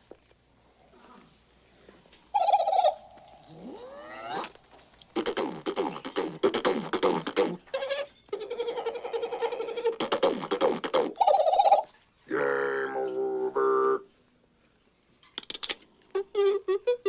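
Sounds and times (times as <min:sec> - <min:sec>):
man making mouth sound effects: 0:02.9 - 0:07.7, 0:08.6 - 0:11.6, 0:12.3 - 0:14.1, 0:15.4 - 0:16.4.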